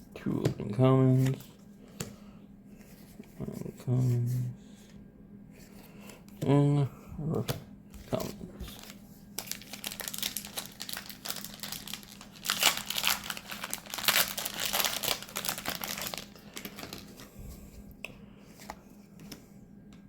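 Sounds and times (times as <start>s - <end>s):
foil wrapper crinkling and tearing: 8.1s - 17.3s.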